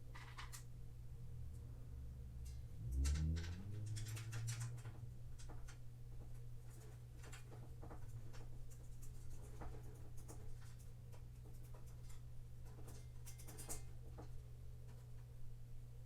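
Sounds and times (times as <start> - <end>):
steady low hum: 0.0 - 16.0
small metal parts clicking: 2.4 - 5.8.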